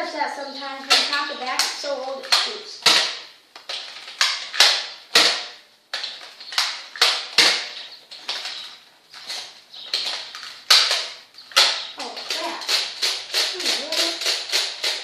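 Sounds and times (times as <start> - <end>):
foam blaster firing clacks: 0.8 - 5.6.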